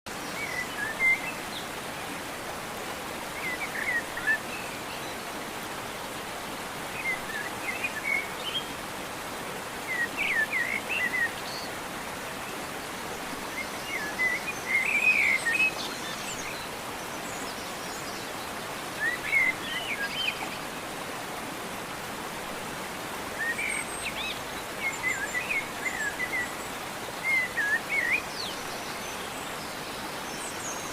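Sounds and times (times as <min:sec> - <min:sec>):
songbird chirping: 0:23.3 - 0:30.9.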